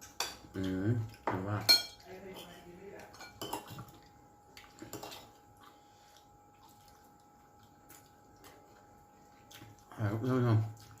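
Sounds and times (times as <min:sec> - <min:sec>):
dishes and cutlery clinking: 0:00.0 - 0:04.0, 0:04.6 - 0:05.4.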